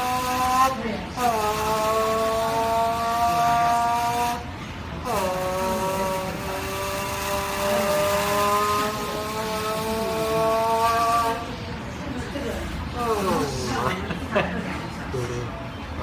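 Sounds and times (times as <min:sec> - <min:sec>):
buzzing imitation car sound: 0:00.0 - 0:11.8.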